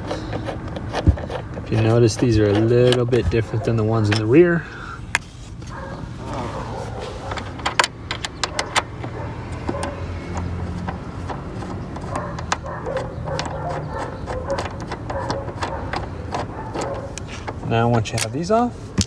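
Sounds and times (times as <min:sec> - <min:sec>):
hand tools clicking on metal bolts: 0:00.0 - 0:04.4, 0:07.3 - 0:19.0.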